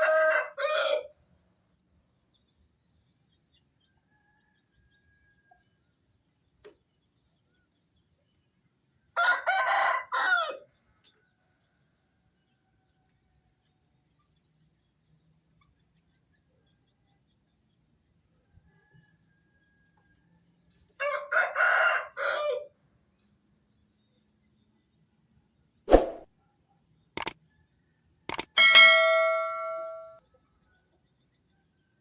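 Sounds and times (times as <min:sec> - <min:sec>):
rooster crowing: 0:00.0 - 0:01.2, 0:09.2 - 0:10.7, 0:21.0 - 0:22.7, 0:28.3 - 0:30.2
sharp knock: 0:25.9 - 0:26.3
short click: 0:28.3 - 0:28.5.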